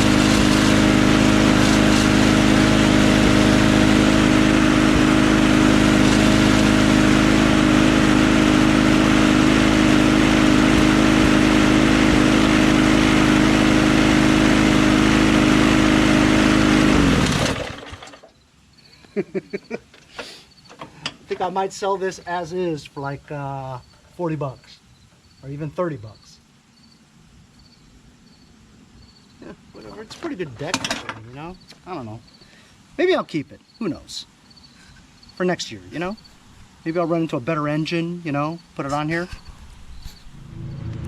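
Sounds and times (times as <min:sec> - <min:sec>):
lawn mower engine running: 0:00.0 - 0:18.4, 0:36.0 - 0:36.8.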